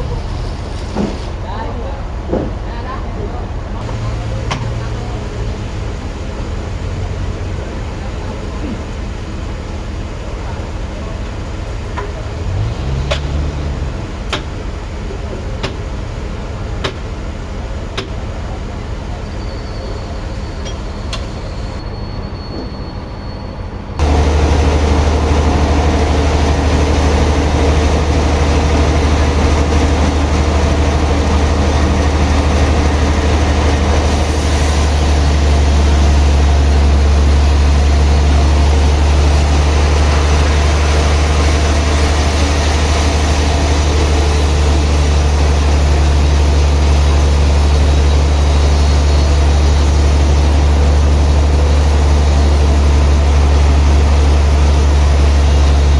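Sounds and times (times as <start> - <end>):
sawmill machinery droning: 3.7 - 21.8, 24.0 - 55.9
high hiss: 32.2 - 55.9.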